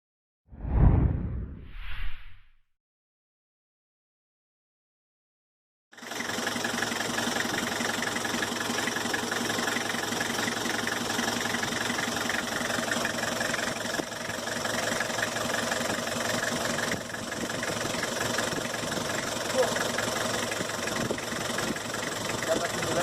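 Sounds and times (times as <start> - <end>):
diesel engine idling: 6.0 - 23.0.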